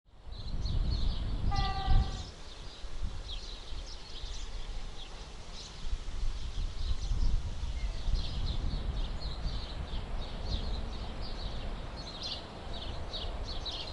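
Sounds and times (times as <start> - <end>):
birds chirping: 0.2 - 13.9
locomotive horn toot: 1.5 - 2.3.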